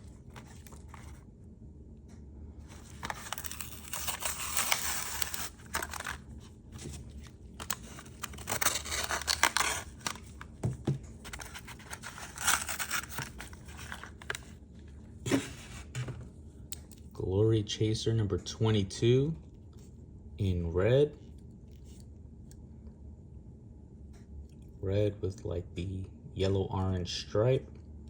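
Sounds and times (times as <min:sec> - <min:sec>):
card tearing: 0:00.0 - 0:01.2, 0:02.7 - 0:10.6, 0:11.2 - 0:14.5
plastic crinkling: 0:00.0 - 0:01.2, 0:02.7 - 0:14.6
small clicks and scrapes: 0:21.3 - 0:22.1.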